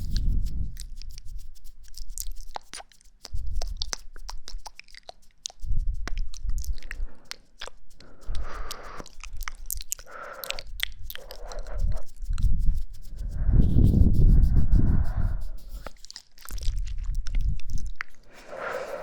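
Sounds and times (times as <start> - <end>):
crackling clicks and scratching: 0.0 - 14.5.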